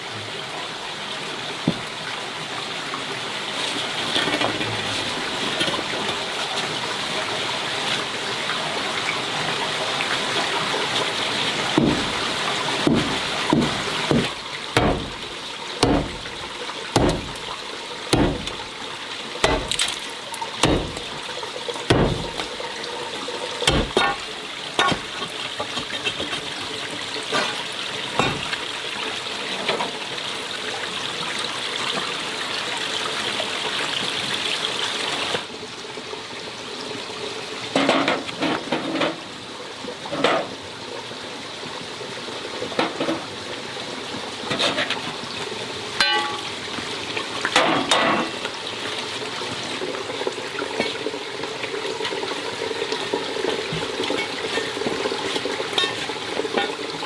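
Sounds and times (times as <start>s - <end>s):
water running: 1.5s - 31.0s, 44.1s - 57.0s.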